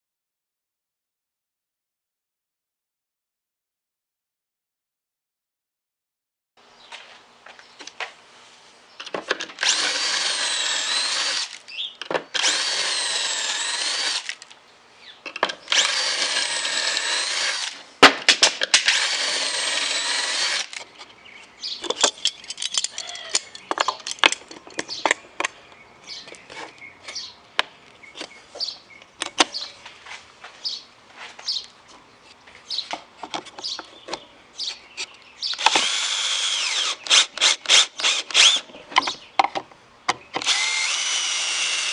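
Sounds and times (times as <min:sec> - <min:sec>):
power drill whining: 0:09.6 - 0:11.6, 0:12.4 - 0:14.4, 0:15.7 - 0:17.8, 0:18.9 - 0:20.8, 0:35.6 - 0:38.7, 0:40.4 - 0:41.9.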